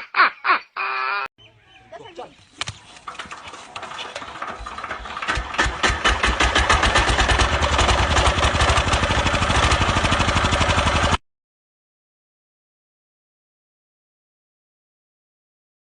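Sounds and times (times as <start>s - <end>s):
engine-driven machine running: 2.9s - 11.2s.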